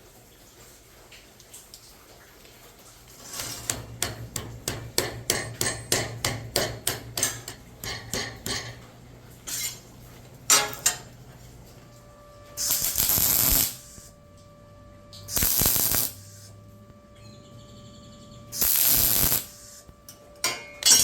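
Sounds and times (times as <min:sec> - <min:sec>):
hammer striking metal: 0:03.7 - 0:08.8, 0:10.5 - 0:11.1, 0:20.4 - 0:21.0.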